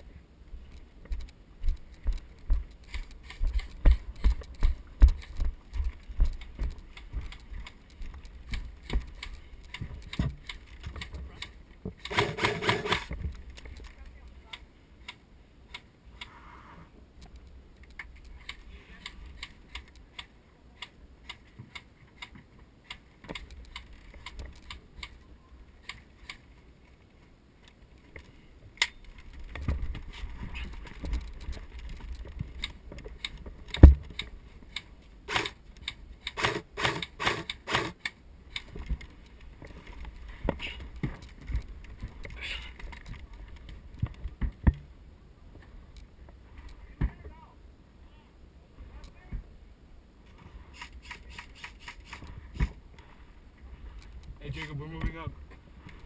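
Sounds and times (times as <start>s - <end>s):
airsoft guns firing: 12.0s - 13.1s, 35.3s - 35.6s, 36.3s - 38.0s
heavy thump: 33.8s - 34.1s.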